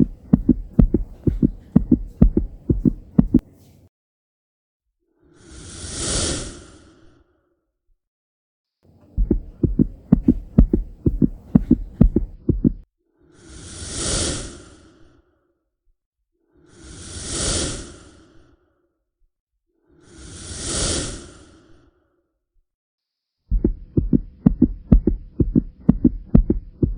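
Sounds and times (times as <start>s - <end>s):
low heartbeat thuds: 0.0s - 3.4s, 9.1s - 12.8s, 23.5s - 26.9s
breath-like whooshes: 13.3s - 15.2s, 16.6s - 18.8s, 20.0s - 22.1s.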